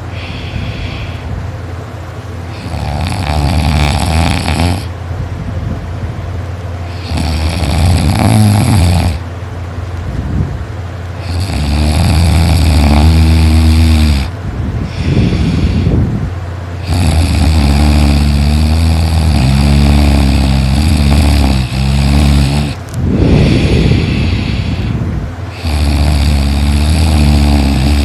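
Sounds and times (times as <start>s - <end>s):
person snoring loudly: 2.5s - 4.9s, 6.9s - 9.2s, 11.2s - 16.0s, 16.8s - 28.0s.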